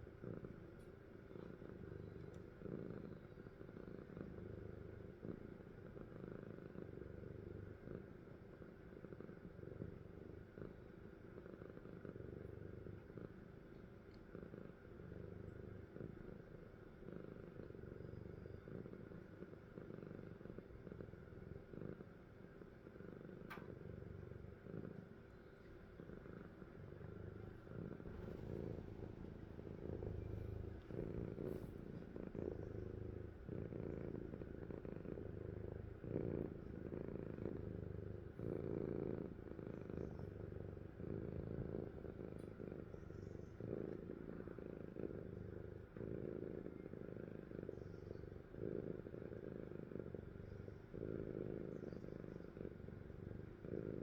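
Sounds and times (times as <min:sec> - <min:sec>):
cat breathing with low rumble: 0:25.9 - 0:46.2.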